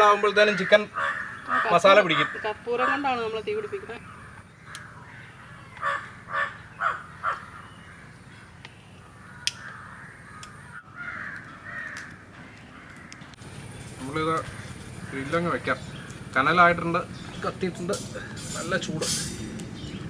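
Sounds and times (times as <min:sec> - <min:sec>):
crow cawing: 0:00.0 - 0:13.4, 0:14.3 - 0:16.2, 0:18.1 - 0:18.6.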